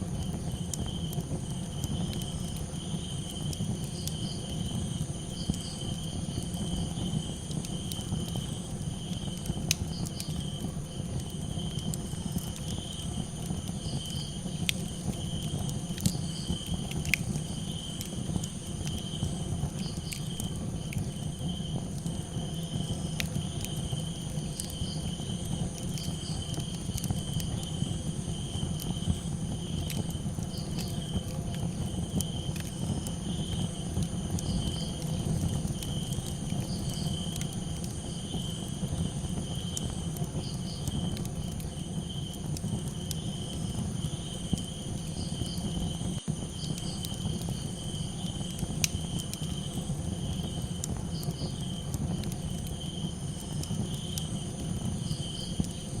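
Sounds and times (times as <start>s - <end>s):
campfire crackling: 0.0s - 56.0s
crickets chirping: 0.0s - 56.0s.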